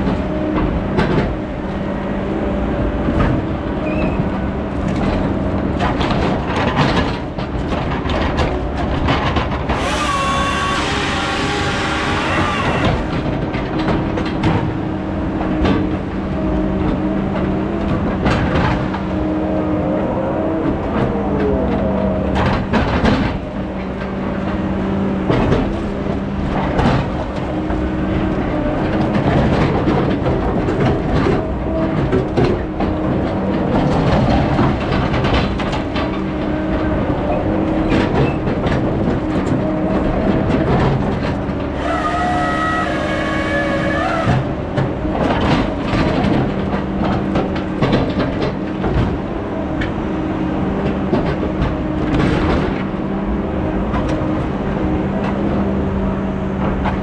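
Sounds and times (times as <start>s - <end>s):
diesel engine running: 0.0s - 57.0s
machine clanks and knocks: 3.0s - 10.8s, 11.8s - 19.1s, 20.9s - 41.8s, 44.1s - 50.0s, 50.6s - 53.1s.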